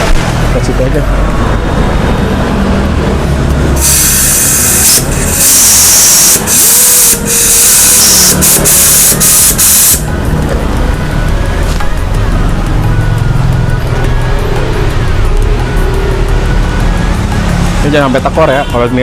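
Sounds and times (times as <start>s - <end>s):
air-powered brake bleeder hissing: 3.8s - 10.1s.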